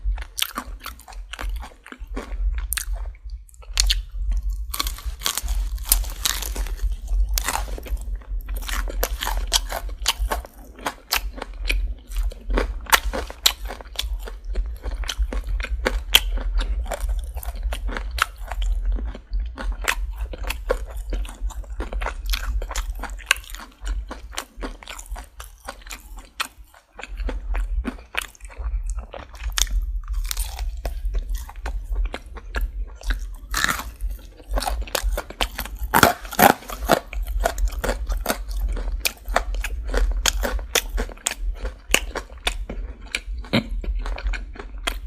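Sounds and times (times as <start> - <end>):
low hum: 0.0 - 10.7
crunchy chewing of fried chicken: 0.0 - 45.0.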